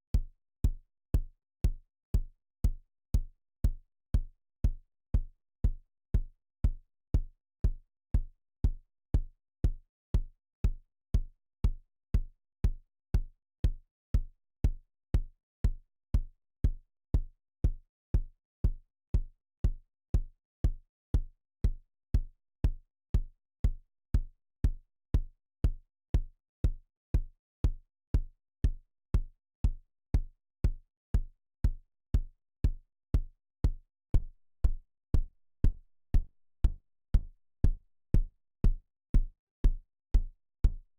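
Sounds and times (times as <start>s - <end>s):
synthesized kick drum thumps: 28.2s - 40.9s.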